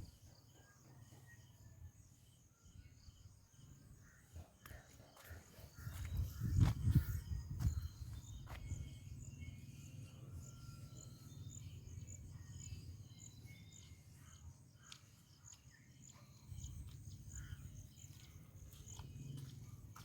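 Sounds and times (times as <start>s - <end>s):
bird chirps: 0.0s - 20.0s
cricket chirping: 0.0s - 20.0s
low wind rumble: 5.8s - 9.3s.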